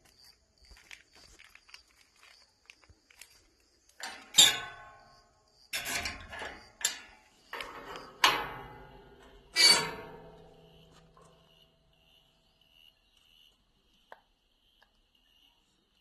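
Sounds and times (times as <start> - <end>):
metal gate latch clanking: 4.0 - 10.6.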